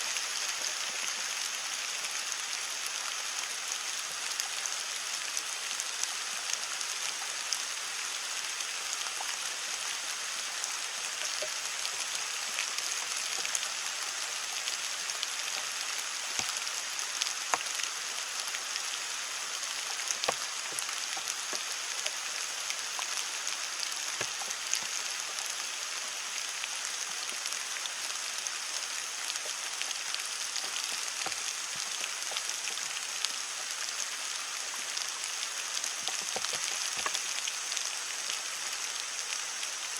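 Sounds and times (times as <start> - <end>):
heavy rain on leaves: 0.0 - 39.9
raindrops ticking: 19.7 - 22.2, 29.2 - 39.7.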